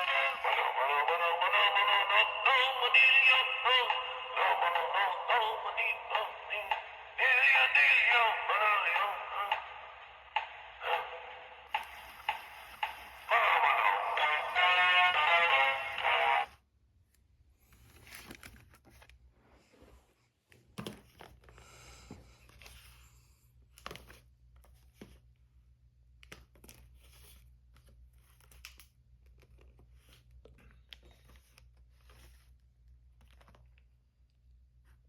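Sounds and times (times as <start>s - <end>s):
packaging crinkling and rustling: 17.8s - 19.2s.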